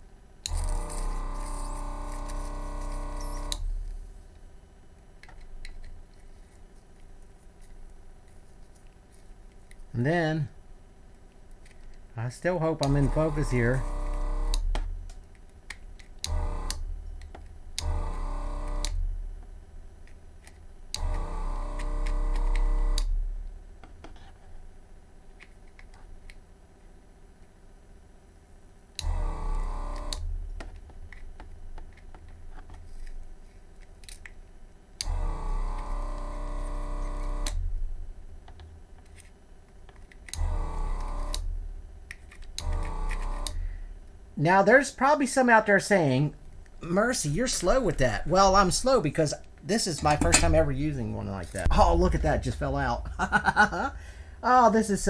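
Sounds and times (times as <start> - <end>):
vacuum pump buzzing: 0.4 - 4.2, 12.7 - 15.2, 16.2 - 17.2, 17.8 - 19.4, 20.9 - 23.7, 29.0 - 30.8, 35.0 - 37.8, 40.3 - 44.1.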